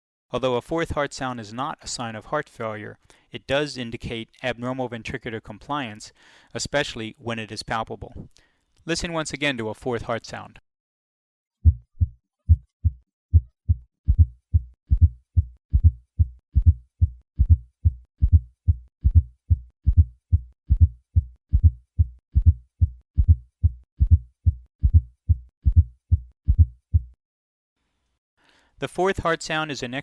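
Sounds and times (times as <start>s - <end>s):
heartbeat low thuds: 11.6s - 27.2s.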